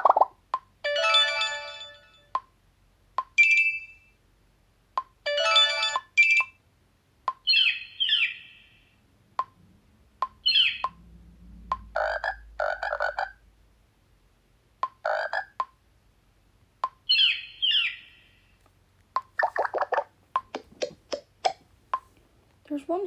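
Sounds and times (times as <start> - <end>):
phone notification tones: 0.8 - 2.4, 5.3 - 6.6.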